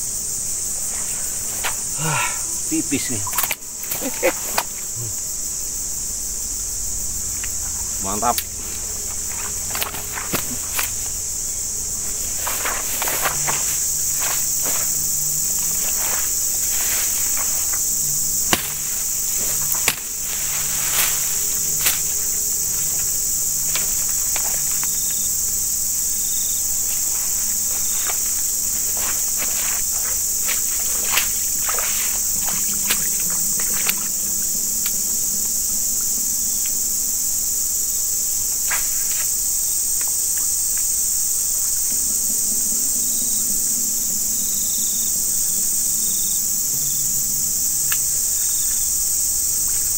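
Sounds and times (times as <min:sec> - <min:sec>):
insects chorus: 0:00.0 - 0:49.9
sharp clicks and knocks: 0:18.5 - 0:20.1.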